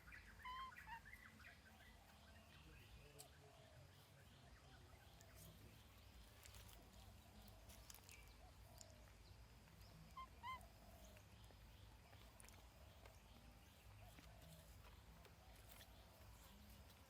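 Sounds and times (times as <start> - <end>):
high-pitched animal calls: 10.1 - 10.8.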